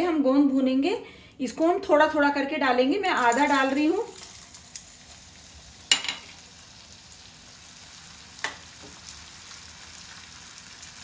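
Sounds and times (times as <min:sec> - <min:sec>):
faint frying sizzle: 0:02.9 - 0:11.0.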